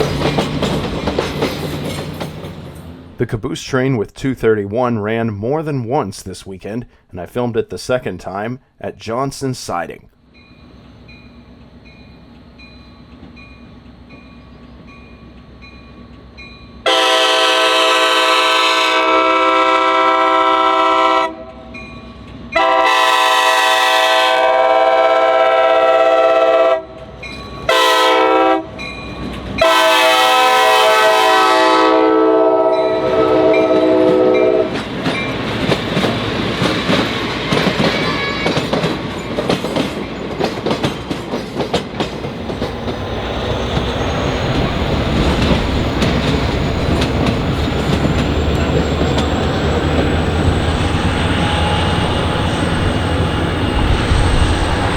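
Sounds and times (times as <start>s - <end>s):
train wheels clattering: 0.0s - 3.0s, 34.1s - 54.9s
faint train hum: 0.0s - 3.8s, 7.4s - 54.9s
locomotive air horn: 16.8s - 21.6s, 22.6s - 27.0s, 27.7s - 28.7s, 29.6s - 34.8s, 46.2s - 54.9s.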